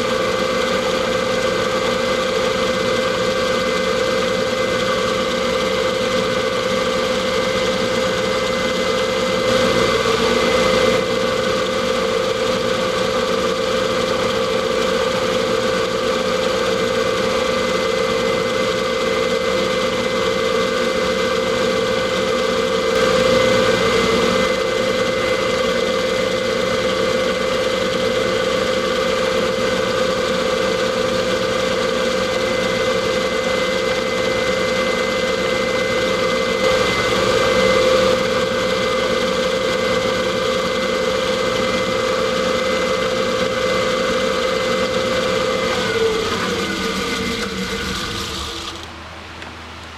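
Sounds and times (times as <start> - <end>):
metal lathe running: 0.0 - 49.0.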